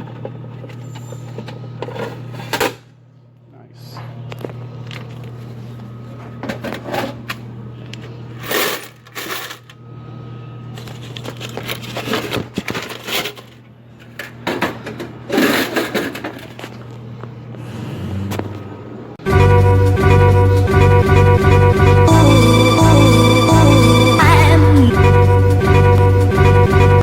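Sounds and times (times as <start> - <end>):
vending machine metal parts clattering: 8.3 - 9.8, 10.9 - 16.8
coins clinking: 8.4 - 9.8
steady low hum: 17.1 - 27.0.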